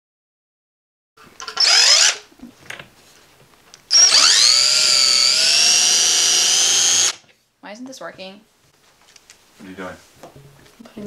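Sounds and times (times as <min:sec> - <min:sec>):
power drill whirring: 0:01.4 - 0:02.3, 0:03.9 - 0:07.2.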